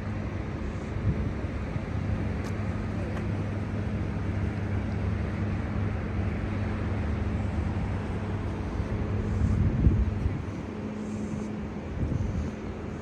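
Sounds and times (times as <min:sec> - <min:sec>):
low rumble with constant hum: 0:00.0 - 0:13.0
wind on microphone: 0:08.8 - 0:13.0.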